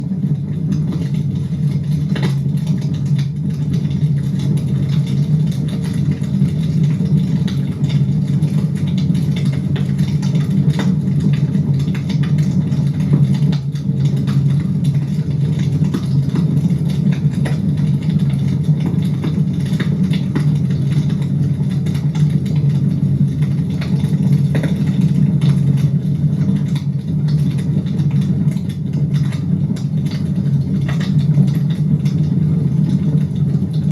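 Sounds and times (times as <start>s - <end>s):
fire rumbling: 0.0s - 33.9s
fire crackling and popping: 0.2s - 33.9s.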